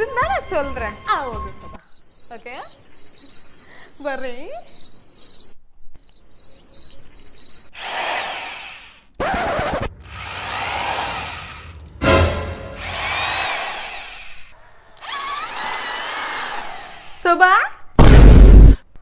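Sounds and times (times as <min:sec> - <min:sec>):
power drill whining: 0:07.8 - 0:09.1, 0:10.0 - 0:11.9, 0:12.8 - 0:17.4.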